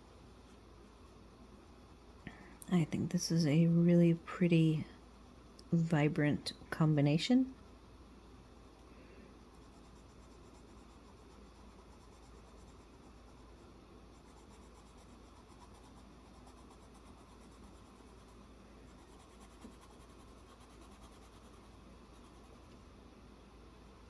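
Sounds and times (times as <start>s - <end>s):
pencil scratching on paper: 9.5s - 22.6s.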